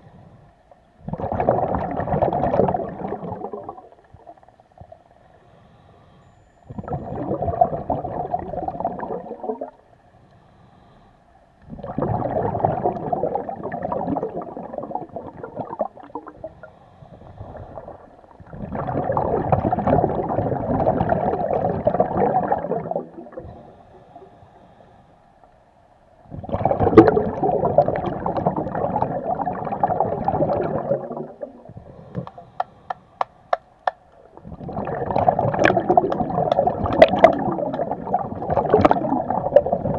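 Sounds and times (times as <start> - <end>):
gurgling exhaled bubbles: 1.0 - 5.0, 6.7 - 9.8, 11.6 - 23.8, 26.2 - 32.6, 34.2 - 39.9.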